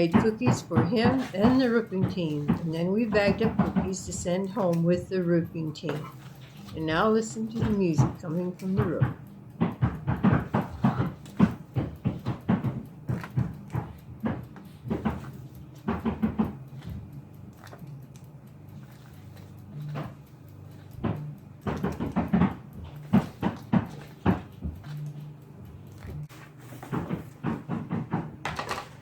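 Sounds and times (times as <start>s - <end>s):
hammers nailing shingles: 0.0s - 17.0s, 21.0s - 25.0s.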